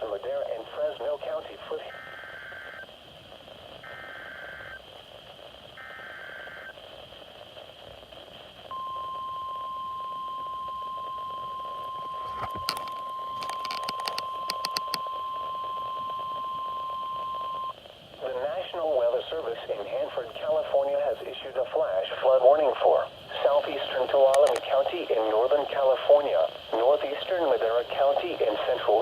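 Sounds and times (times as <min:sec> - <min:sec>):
static crackles: 0:00.0 - 0:29.0
raspy data bursts: 0:01.9 - 0:09.8, 0:10.6 - 0:17.8, 0:23.3 - 0:29.0.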